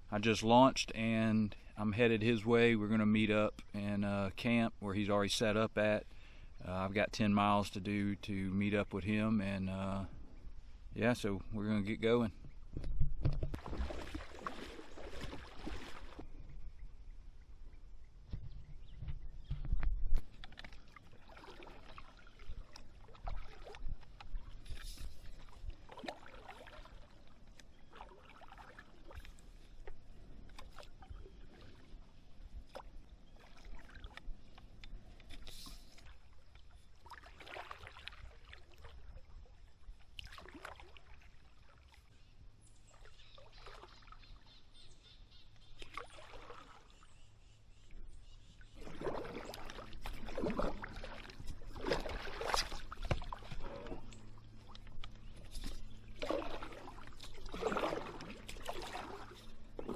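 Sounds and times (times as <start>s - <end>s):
paddle splashing in water: 13.0s - 16.4s, 20.1s - 42.1s, 42.8s - 44.6s, 45.3s - 47.8s, 48.4s - 59.9s.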